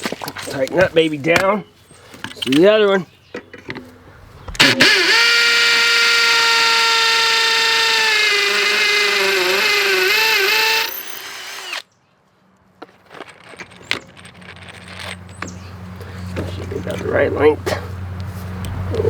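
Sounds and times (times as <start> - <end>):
power drill whining: 4.6 - 11.8.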